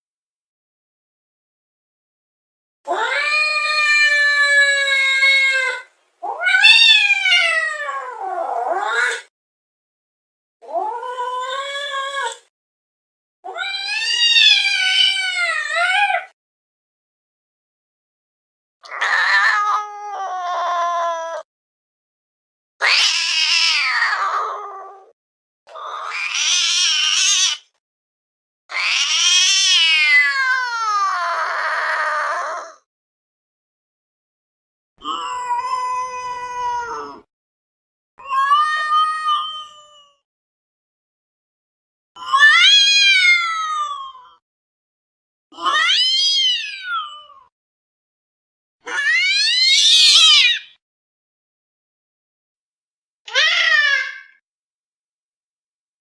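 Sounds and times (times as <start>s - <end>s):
cat yowling: 2.9s - 9.3s, 13.5s - 16.4s, 18.8s - 21.5s, 22.8s - 25.1s, 25.7s - 27.8s, 28.7s - 32.8s, 35.0s - 37.3s, 38.2s - 40.2s, 42.2s - 44.4s, 45.5s - 47.5s, 48.8s - 50.8s, 53.3s - 54.4s.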